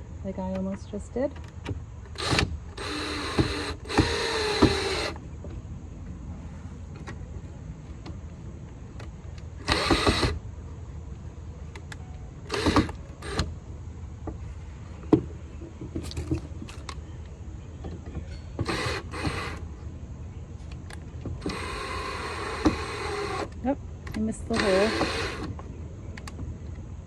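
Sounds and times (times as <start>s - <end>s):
cordless drill whirring: 2.1s - 5.2s, 9.6s - 10.4s, 12.5s - 13.4s, 18.6s - 19.6s, 21.4s - 23.6s, 24.5s - 25.5s
handling clicks and knocks: 15.0s - 19.6s.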